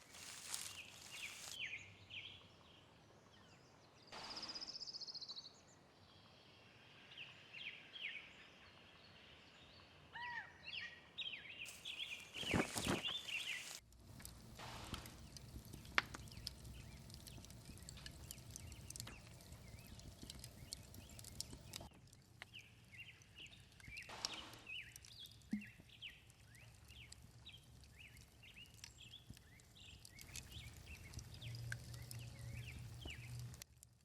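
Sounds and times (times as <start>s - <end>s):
faint outdoor ambience: 0.0s - 34.0s
wild birds singing and calling: 7.0s - 13.8s, 16.2s - 21.9s, 22.5s - 33.6s.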